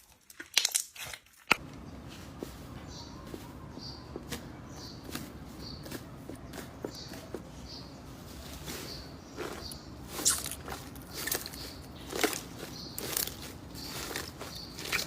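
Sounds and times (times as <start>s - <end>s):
slime squeezed crackling: 10.1s - 15.0s.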